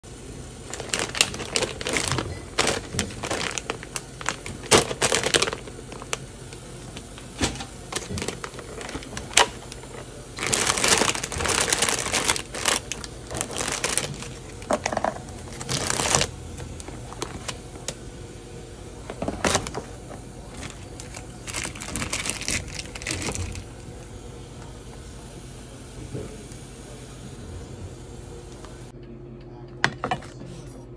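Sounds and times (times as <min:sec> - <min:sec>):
crinkling and rustling: 0:00.6 - 0:18.0, 0:19.0 - 0:24.0.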